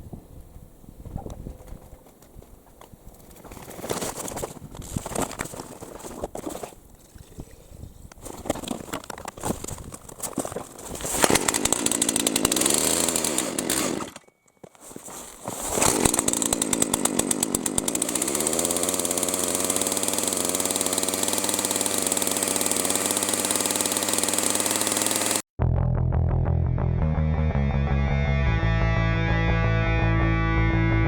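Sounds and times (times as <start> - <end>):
chainsaw cutting firewood: 8.2 - 25.5.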